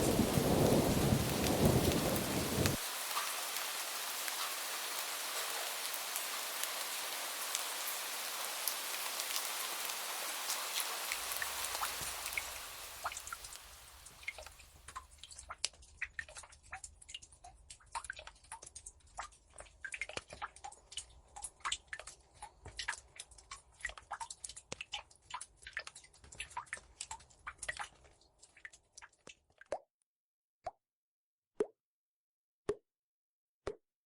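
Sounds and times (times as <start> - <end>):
steady rain: 0.0 - 15.4
water drips falling: 0.0 - 29.8.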